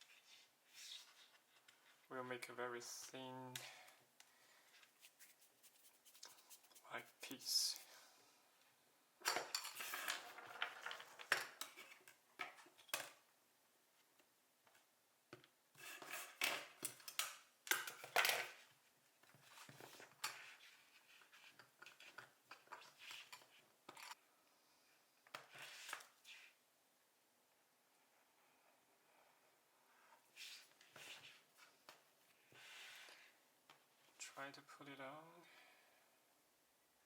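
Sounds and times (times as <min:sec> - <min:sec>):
plastic tools tapping and scraping: 0:15.3 - 0:18.6.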